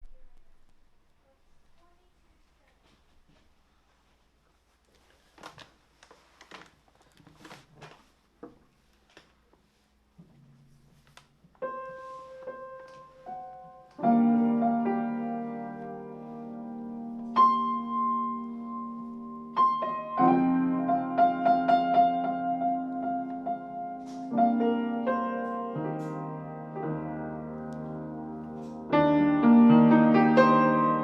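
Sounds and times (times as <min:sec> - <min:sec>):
piano improvisation: 0:11.6 - 0:31.0.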